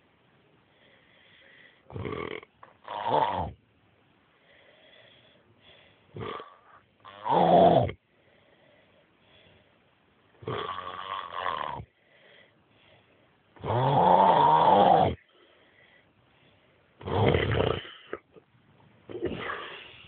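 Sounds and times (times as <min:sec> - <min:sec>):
person snoring: 0:01.9 - 0:03.6, 0:06.2 - 0:08.0, 0:10.4 - 0:11.9, 0:13.6 - 0:15.3, 0:17.0 - 0:18.2, 0:19.1 - 0:20.0.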